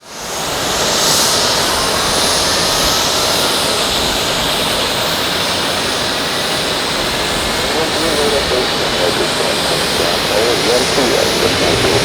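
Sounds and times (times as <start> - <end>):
jet engines running: 1.5 - 12.0.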